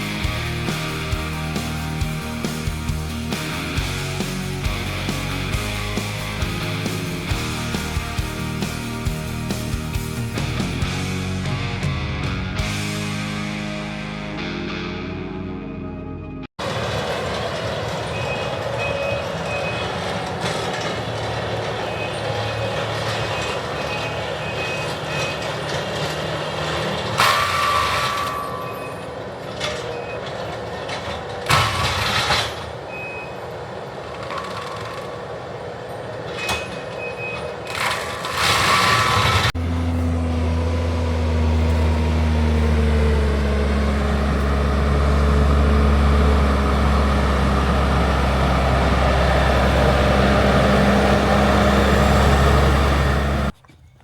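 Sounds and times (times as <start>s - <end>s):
heavy machinery engine running: 0.0s - 14.5s, 16.6s - 53.6s
reversing alarm beeping: 17.6s - 25.7s, 27.6s - 30.5s, 32.9s - 33.5s, 36.3s - 38.0s.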